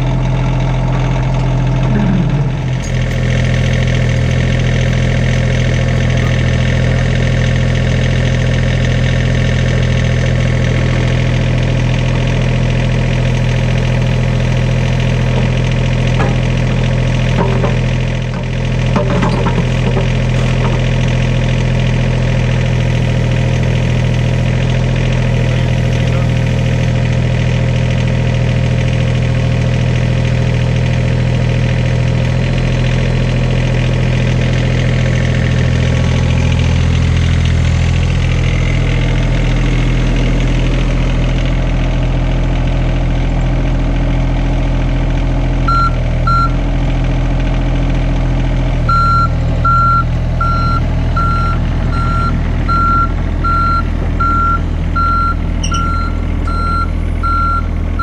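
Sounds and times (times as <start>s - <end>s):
heavy machine engine running: 0.0s - 58.0s
back-up alarm beeping: 45.7s - 46.6s, 48.9s - 57.7s.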